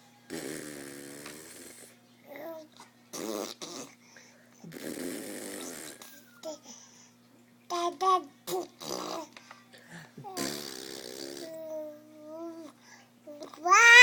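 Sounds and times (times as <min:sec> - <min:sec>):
raspy snore-like vocal noises: 0:00.3 - 0:02.0, 0:03.1 - 0:04.0, 0:04.6 - 0:06.1, 0:08.8 - 0:09.3, 0:10.3 - 0:11.7.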